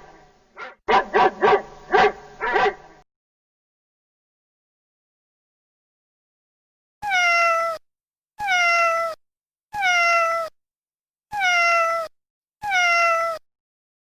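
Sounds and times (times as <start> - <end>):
cat meowing: 7.0 - 7.8, 8.4 - 9.2, 9.8 - 10.6, 11.3 - 13.4.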